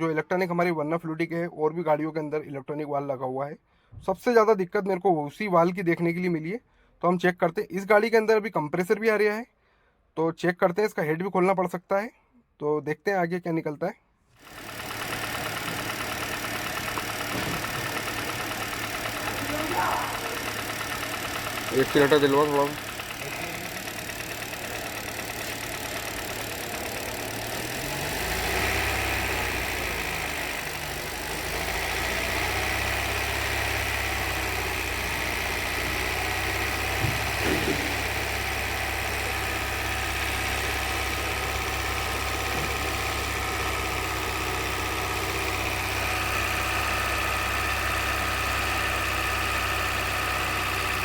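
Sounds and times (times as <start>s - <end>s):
car engine revving and idling: 14.4s - 51.0s
short clunk: 17.3s - 17.9s, 37.0s - 38.0s.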